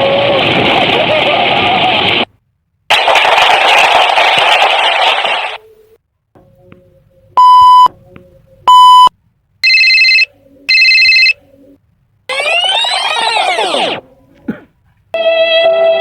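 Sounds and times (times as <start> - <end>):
harsh high beeps: 7.4 - 7.9
loud electronic bleeps: 12.3 - 14.0.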